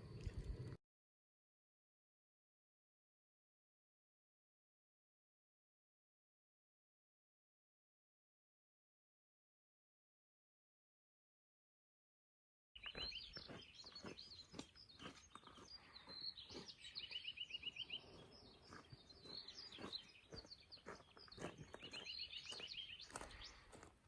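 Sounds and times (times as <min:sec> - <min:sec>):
small birds chirping: 0:12.8 - 0:24.0.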